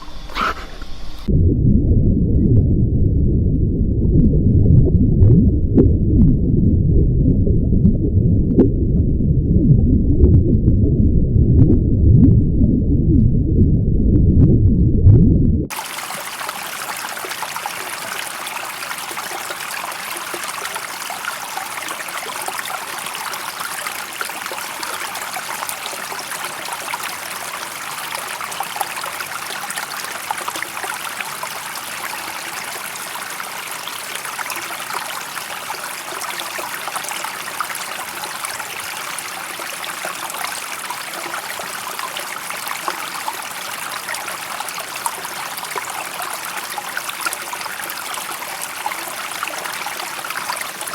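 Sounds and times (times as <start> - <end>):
running water rushing and trickling: 15.7 - 50.9.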